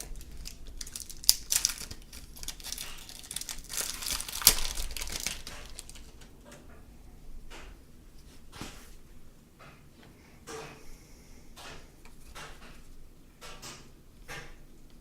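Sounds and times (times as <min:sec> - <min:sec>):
sharp crackles: 0:00.0 - 0:06.3
card packaging crinkling: 0:00.0 - 0:06.4.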